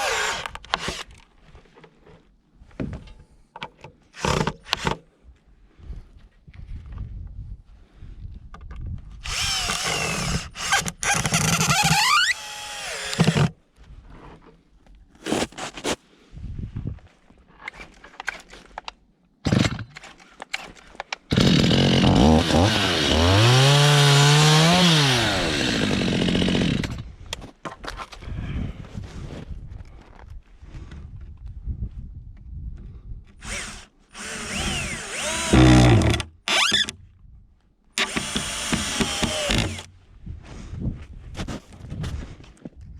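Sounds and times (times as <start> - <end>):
power tool working wood: 0.0 - 1.0, 9.3 - 13.5, 21.3 - 26.9, 33.4 - 36.9, 38.0 - 39.9.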